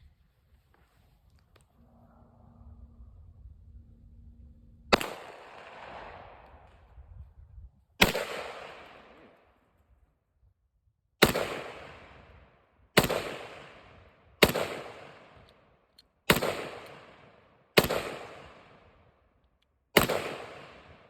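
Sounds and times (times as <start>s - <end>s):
gunshots with long echo: 4.9s - 7.0s, 8.0s - 9.6s, 11.2s - 19.2s, 20.0s - 21.0s.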